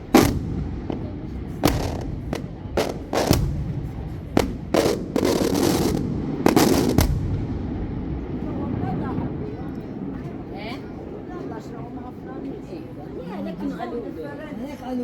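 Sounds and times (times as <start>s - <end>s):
fireworks crackling: 0.0s - 9.6s
fireworks exploding bangs: 0.0s - 9.6s.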